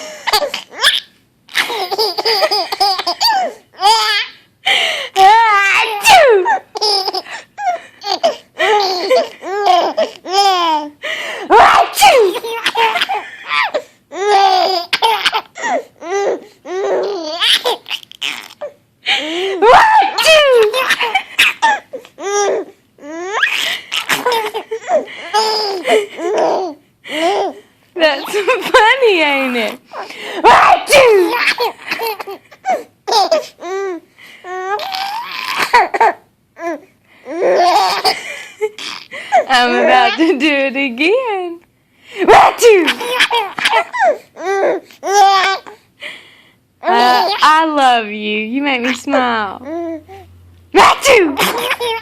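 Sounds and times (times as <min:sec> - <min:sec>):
baby laughing: 0:00.2 - 0:04.4, 0:05.2 - 0:10.9, 0:11.5 - 0:27.6, 0:30.0 - 0:33.9, 0:34.5 - 0:36.2, 0:37.3 - 0:40.4, 0:42.3 - 0:45.7, 0:46.8 - 0:47.5, 0:51.1 - 0:52.0.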